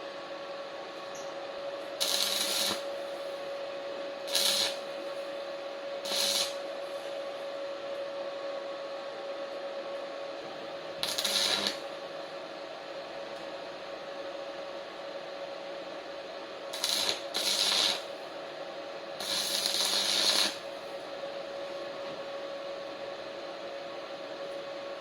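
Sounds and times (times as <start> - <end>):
steady electrical hum: 0.0 - 25.0
welding arc crackling: 2.0 - 3.2, 4.2 - 5.0, 6.0 - 6.7, 11.0 - 11.8, 16.7 - 18.2, 19.2 - 20.7.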